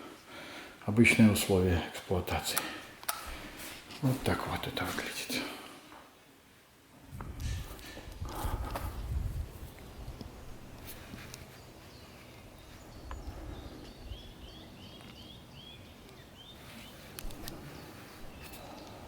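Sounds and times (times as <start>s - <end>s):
outdoor background noise: 0.0s - 19.0s
small bird chirping: 11.2s - 19.0s.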